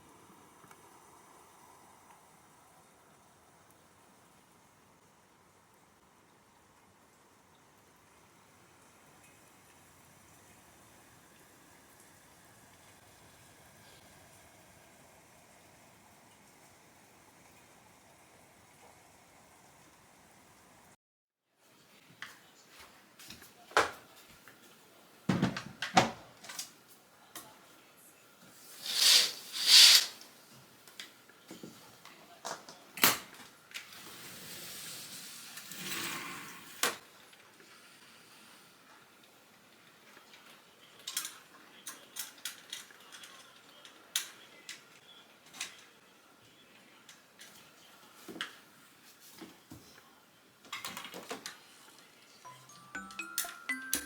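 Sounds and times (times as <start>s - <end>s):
hissing swishes: 28.7s - 30.2s.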